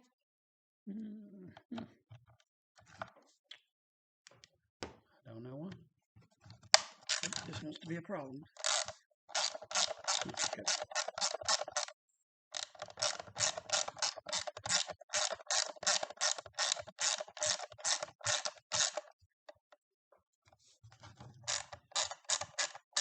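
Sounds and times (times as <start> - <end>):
ratcheting driver clicking: 8.6 - 11.9, 12.6 - 19.1, 21.5 - 23.0.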